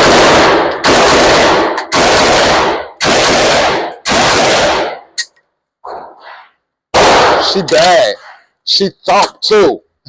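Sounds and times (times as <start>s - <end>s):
rifle shots: 0.0s - 5.2s, 6.9s - 7.9s.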